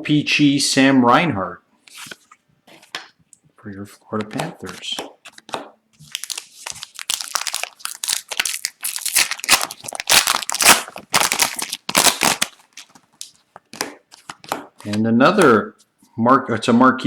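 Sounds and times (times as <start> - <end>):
foil wrapper tearing and crinkling: 4.4 - 14.5.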